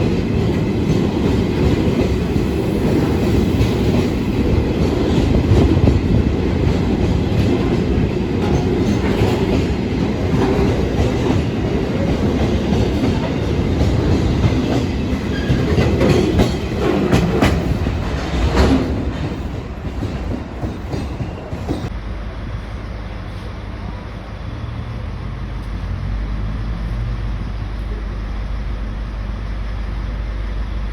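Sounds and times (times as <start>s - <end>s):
train wheels clacking: 0.0s - 22.0s.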